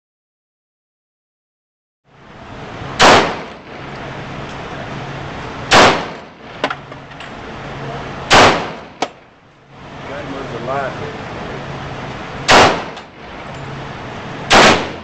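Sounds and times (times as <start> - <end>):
steady low hum: 2.1 - 15.0
pistol shots: 3.0 - 3.6, 5.7 - 6.3, 8.3 - 9.2, 12.4 - 13.1, 14.5 - 15.0.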